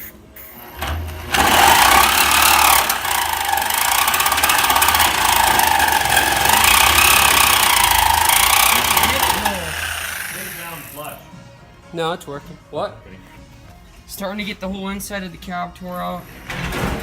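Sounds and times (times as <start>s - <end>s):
power tool running with rattling: 0.6s - 11.2s.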